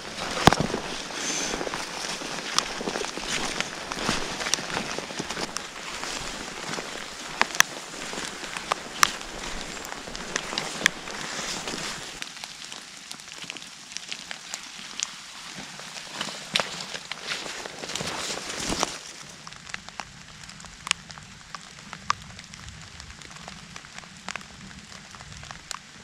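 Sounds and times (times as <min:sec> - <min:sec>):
rain patter in woodland: 0:00.0 - 0:26.0.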